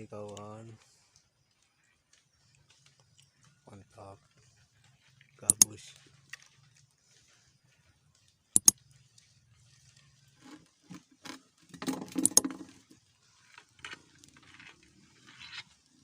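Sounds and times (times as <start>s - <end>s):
handling taps: 5.5s - 5.7s, 12.1s - 12.5s
sharp clicks: 5.5s - 5.7s, 8.6s - 8.8s, 12.2s - 12.5s.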